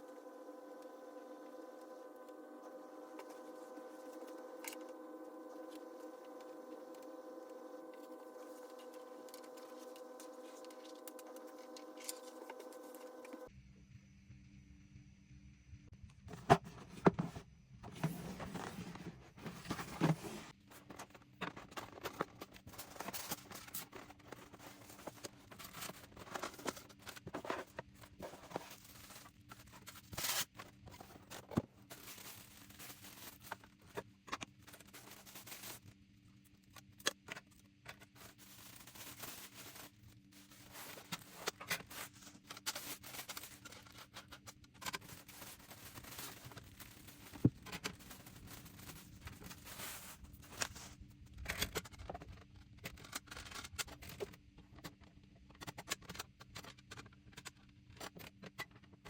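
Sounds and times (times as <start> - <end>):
faint steady hum: 0.0 - 56.2
objects handled on a table: 16.3 - 35.9, 36.7 - 52.2.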